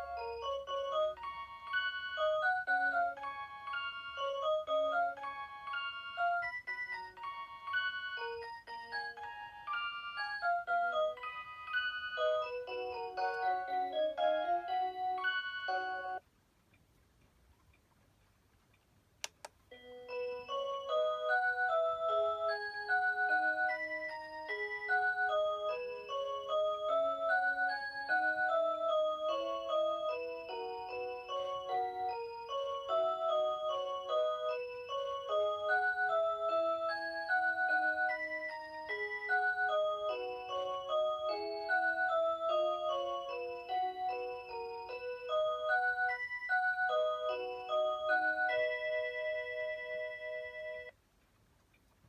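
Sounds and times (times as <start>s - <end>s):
alarm clock chime melody: 0.0s - 16.2s, 19.7s - 51.0s
sharp click: 19.2s - 19.6s.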